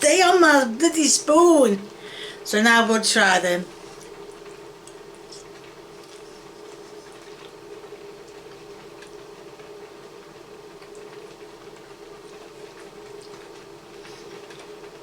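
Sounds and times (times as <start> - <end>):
steady hum: 0.0 - 15.0.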